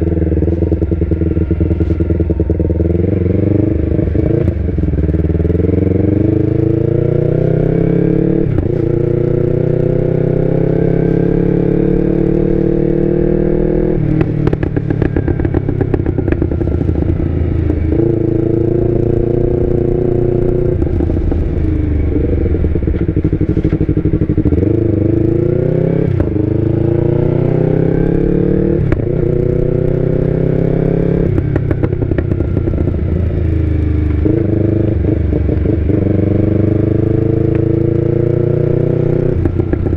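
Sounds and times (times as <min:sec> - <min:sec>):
motorcycle engine accelerating: 0:00.0 - 0:39.9
exhaust crackling: 0:13.7 - 0:27.3.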